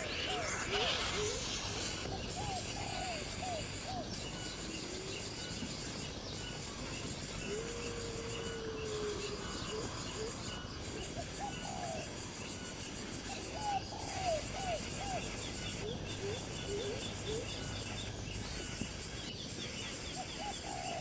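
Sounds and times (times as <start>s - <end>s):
steady background hiss: 0.0s - 21.0s.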